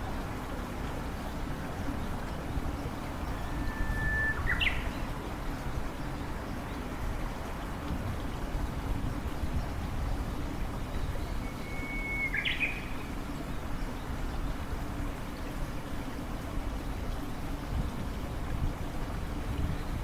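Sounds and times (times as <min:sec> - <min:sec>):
low outdoor noise: 0:00.0 - 0:20.0
bird whistle ending in chirp: 0:03.3 - 0:04.9, 0:11.6 - 0:12.8.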